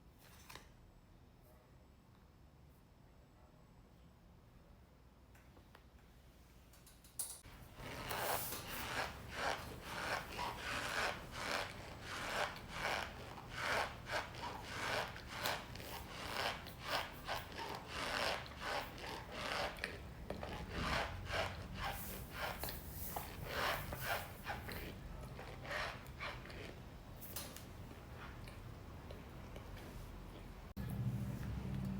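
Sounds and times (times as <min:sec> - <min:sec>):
cornstarch squeaking and rubbing: 0:07.8 - 0:26.8.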